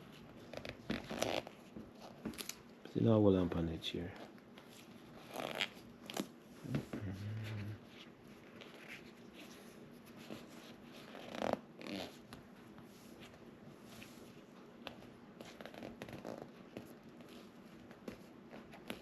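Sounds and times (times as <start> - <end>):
hands rubbing leather: 0.2 - 2.3, 6.6 - 19.0.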